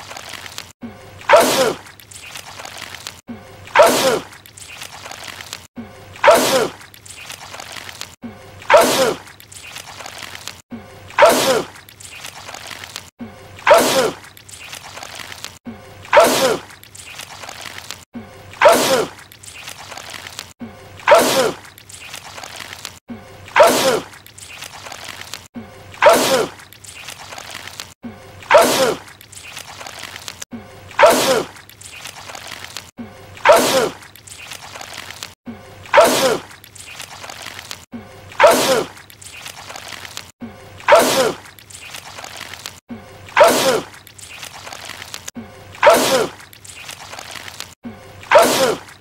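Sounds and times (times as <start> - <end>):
man sneezing loudly: 43.4 - 43.9, 45.8 - 46.4, 48.3 - 48.8.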